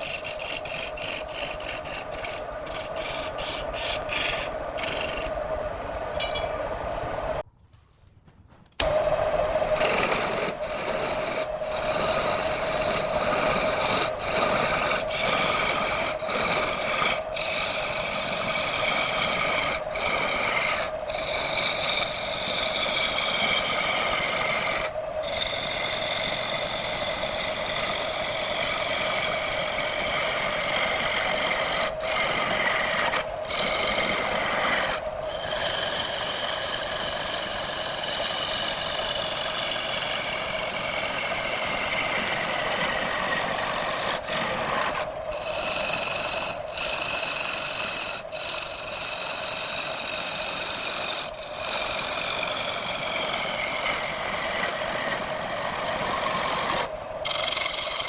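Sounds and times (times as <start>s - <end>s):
tool scraping spinning wood: 0.0s - 7.4s, 8.1s - 58.0s
wood lathe humming: 0.0s - 7.4s, 8.8s - 58.0s.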